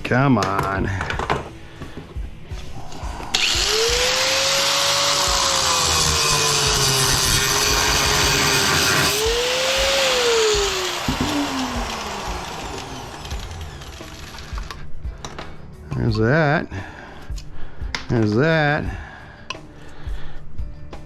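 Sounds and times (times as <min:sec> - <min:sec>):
electric power tool motor: 0:03.3 - 0:14.8.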